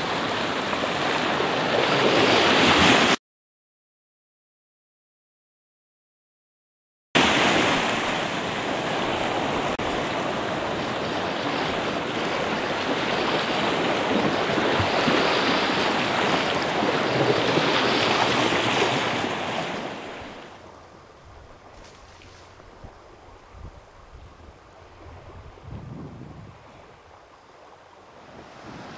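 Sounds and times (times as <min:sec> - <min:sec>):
water rushing: 0:07.2 - 0:23.5.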